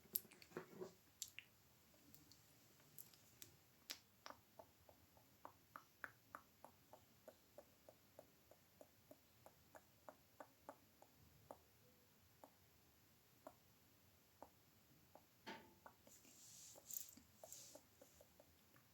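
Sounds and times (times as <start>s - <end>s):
mouth clicks: 3.9s - 11.7s.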